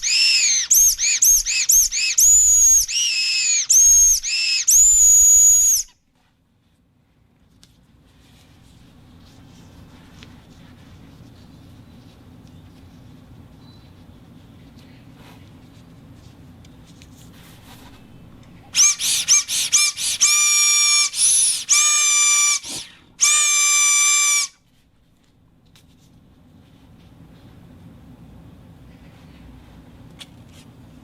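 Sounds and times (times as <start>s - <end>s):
high-pitched whistle toots: 0.0s - 6.0s, 18.8s - 24.6s.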